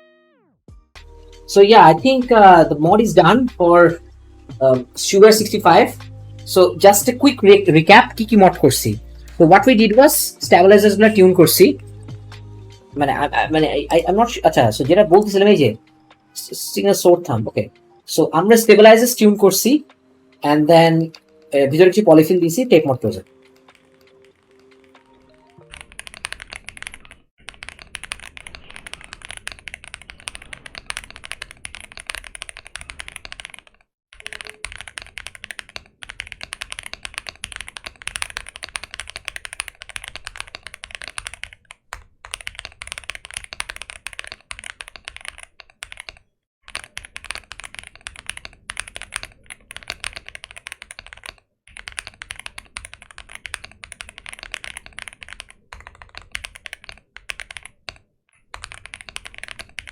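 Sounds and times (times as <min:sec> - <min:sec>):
fast typing on mechanical keyboard: 0:23.0 - 0:59.9.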